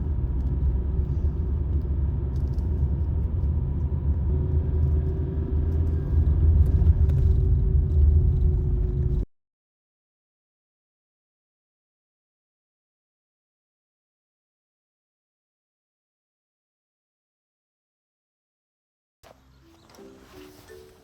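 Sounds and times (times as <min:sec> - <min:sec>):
vehicle rumble: 0:00.0 - 0:09.3.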